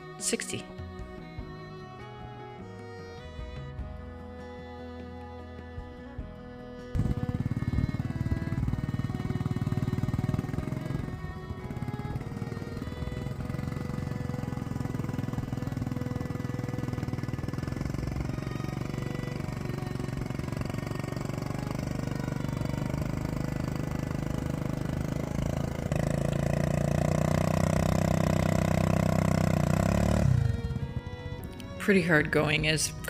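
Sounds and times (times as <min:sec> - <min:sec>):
plow dragging through ground: 0:00.0 - 0:33.0
atv engine running under load: 0:06.9 - 0:33.0.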